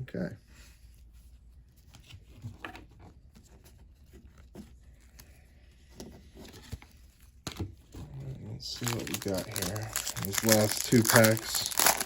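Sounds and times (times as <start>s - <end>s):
trading cards rustling: 8.7s - 12.0s.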